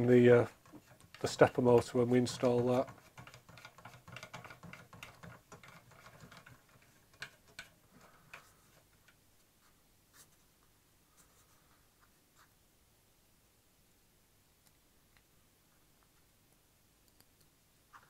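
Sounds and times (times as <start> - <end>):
small parts clicking and tapping: 0.6 - 9.2.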